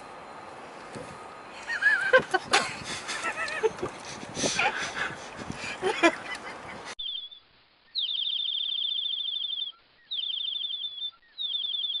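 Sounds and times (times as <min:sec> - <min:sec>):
high-pitched chirping trill: 0:07.0 - 0:12.0.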